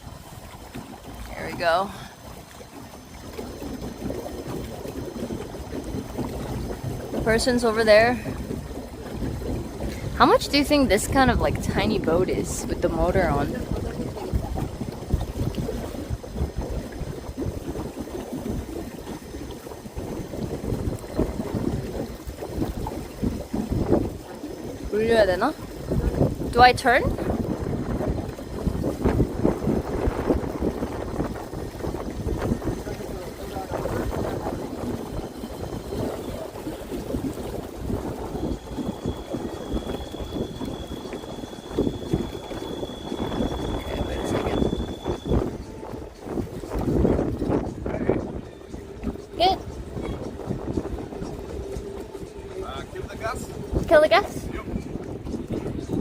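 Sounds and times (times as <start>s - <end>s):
boat motor: 0.0s - 56.0s
water moving along hull: 0.0s - 56.0s
wind buffeting microphone: 0.0s - 56.0s
thin steady high tone: 38.2s - 45.6s.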